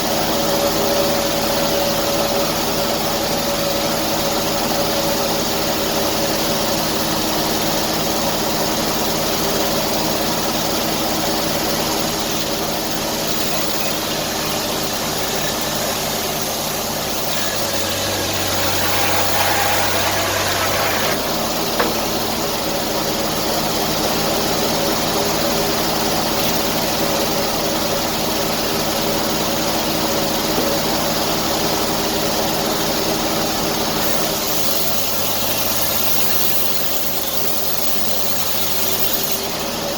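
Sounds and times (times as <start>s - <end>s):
sawmill engine running: 0.0s - 25.8s
strong hiss: 17.1s - 22.2s.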